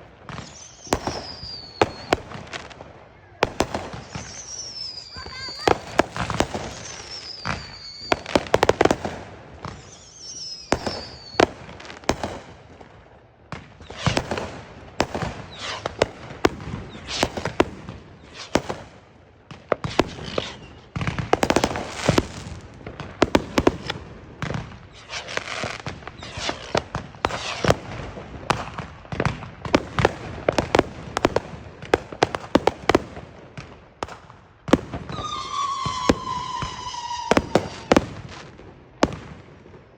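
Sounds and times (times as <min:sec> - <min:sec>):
fireworks bangs and crackling: 0:00.0 - 0:39.9
falling firework whistles: 0:00.3 - 0:02.6, 0:03.6 - 0:09.0, 0:09.6 - 0:12.2, 0:15.2 - 0:18.9, 0:19.8 - 0:22.6, 0:23.6 - 0:27.8, 0:34.7 - 0:39.2.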